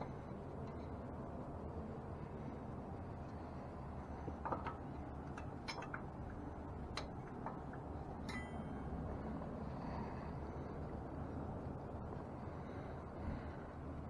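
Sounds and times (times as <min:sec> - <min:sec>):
low background rumble: 0:00.0 - 0:14.0
metal tools clicking and tapping: 0:04.5 - 0:08.9.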